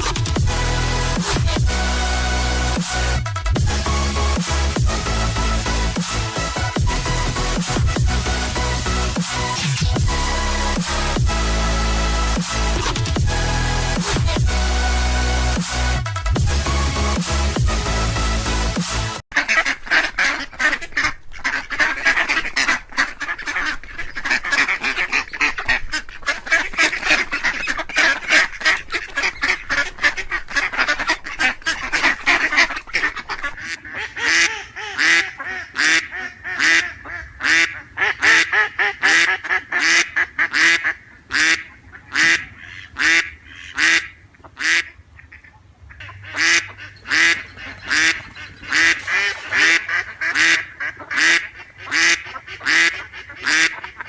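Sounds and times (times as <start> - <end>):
ducks quacking: 0.0 - 54.0.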